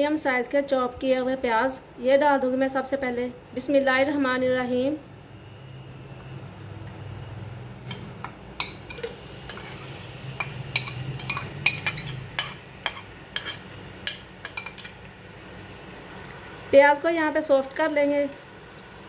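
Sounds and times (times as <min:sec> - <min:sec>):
spoon clinking against pot: 0:07.9 - 0:15.0
onions sizzling in hot oil: 0:07.9 - 0:19.0.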